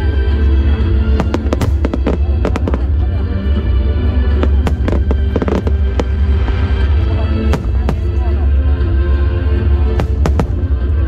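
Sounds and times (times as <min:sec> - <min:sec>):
fireworks bangs: 0:01.1 - 0:03.0, 0:04.3 - 0:08.4, 0:09.9 - 0:10.8.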